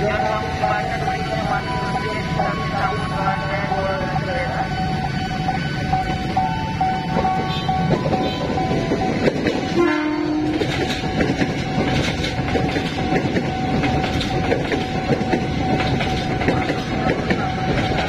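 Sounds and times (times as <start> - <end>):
level crossing warning tone: 0.0 - 18.0
train wheels clattering: 7.1 - 18.0
train horn blast: 9.7 - 10.7.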